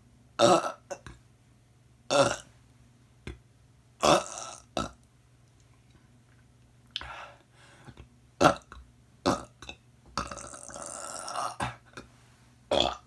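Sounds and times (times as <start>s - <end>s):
person burping: 0.4s - 1.1s, 2.1s - 2.4s, 4.0s - 5.0s, 8.4s - 12.1s, 12.7s - 13.0s.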